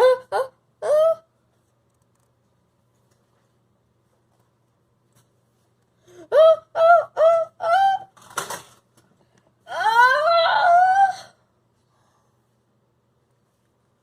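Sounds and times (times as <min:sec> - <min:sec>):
person sobbing and wailing: 0:00.0 - 0:01.3, 0:06.1 - 0:08.2, 0:09.6 - 0:11.5.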